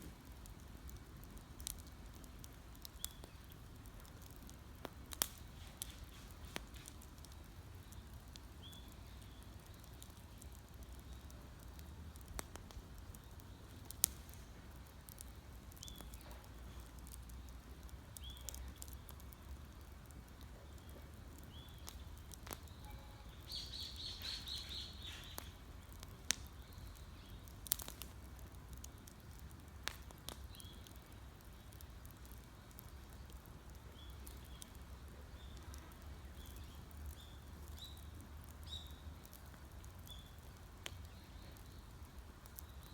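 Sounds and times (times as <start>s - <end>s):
campfire crackling and popping: 0.0s - 42.9s
bird chirping and trilling: 22.8s - 25.4s.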